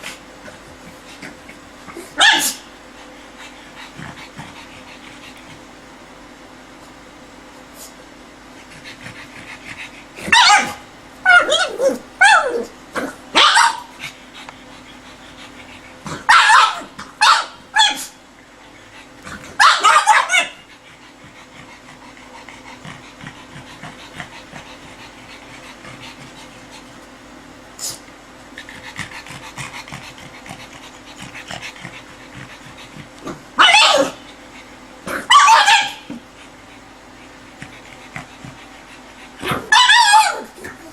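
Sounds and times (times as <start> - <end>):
dog yelping and whining: 1.9 - 2.6, 10.2 - 14.0, 16.2 - 18.2, 19.5 - 20.7, 33.6 - 34.4, 35.1 - 36.2, 39.4 - 40.9.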